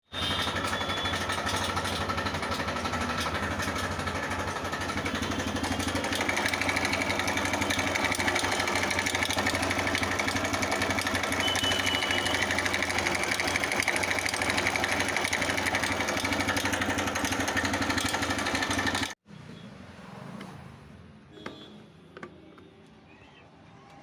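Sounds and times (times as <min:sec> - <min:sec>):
motorcycle engine idling with rattle: 0:00.1 - 0:19.2.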